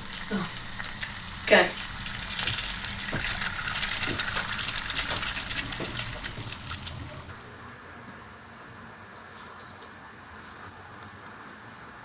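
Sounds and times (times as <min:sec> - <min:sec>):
food sizzling in a frying pan: 0:00.0 - 0:07.7.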